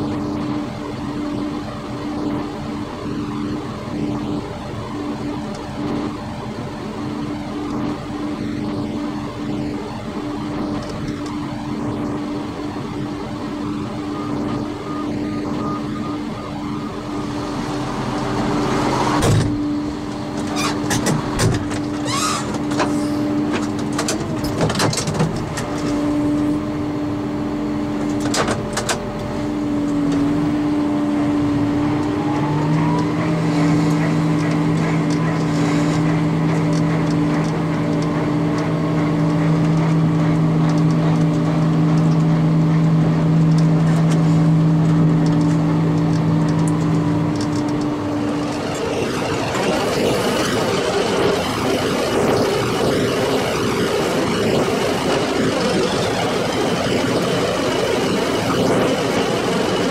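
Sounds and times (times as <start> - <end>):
low drone: 0.0 - 24.5, 28.9 - 59.9
engine running under load: 0.0 - 59.9
clattering knocks and clicks: 19.2 - 26.0, 28.0 - 29.3, 32.0 - 50.6.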